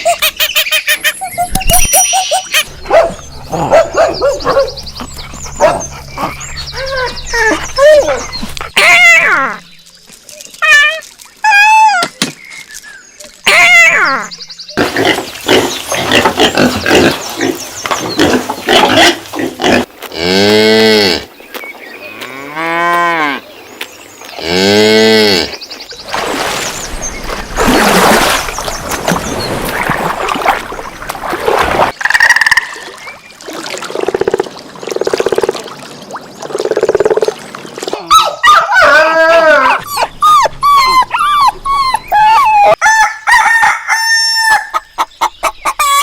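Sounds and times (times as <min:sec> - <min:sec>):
animal calls: 0:37.9 - 0:42.8.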